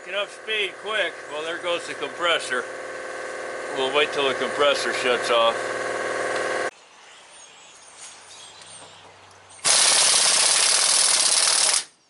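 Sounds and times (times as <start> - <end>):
air compressor motor: 0.0 - 6.7, 9.7 - 11.9
air impact wrench hammering: 9.6 - 11.9.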